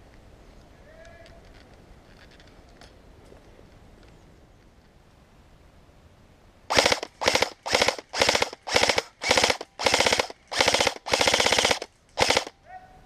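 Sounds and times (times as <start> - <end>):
airsoft rifle full-auto bursts: 6.7 - 12.6.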